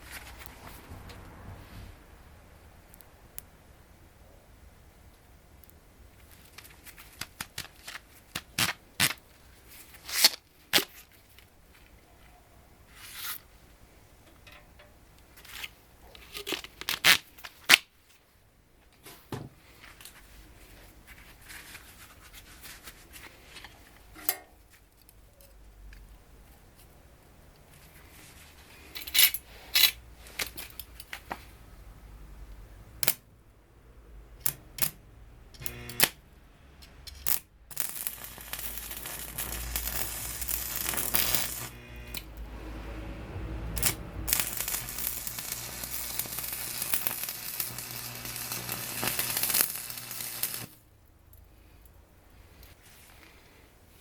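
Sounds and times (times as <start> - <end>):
welding arc pops and clicks: 33.0 - 33.2, 34.4 - 35.0, 35.6 - 36.2, 37.1 - 42.4, 43.8 - 50.8
welding arc crackling sizzle: 35.6 - 36.2, 37.1 - 42.5, 43.7 - 50.8.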